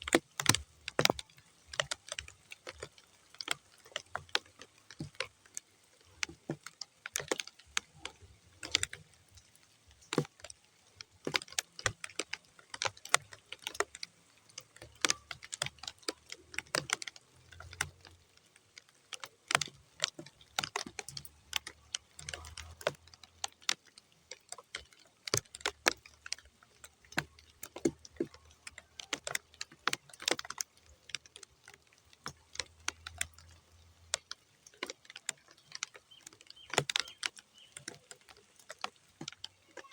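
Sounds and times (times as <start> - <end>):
raindrops ticking on mud: 0.0 - 39.9.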